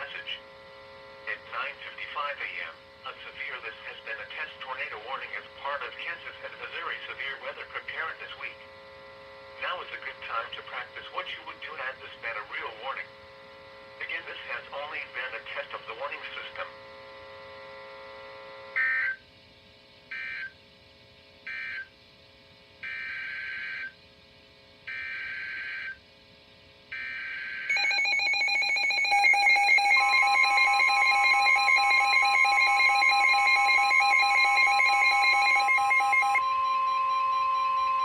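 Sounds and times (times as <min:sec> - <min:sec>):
steady warning alarm tone: 0:26.9 - 0:38.0
fluttering multi-pitch alarm: 0:27.0 - 0:38.0.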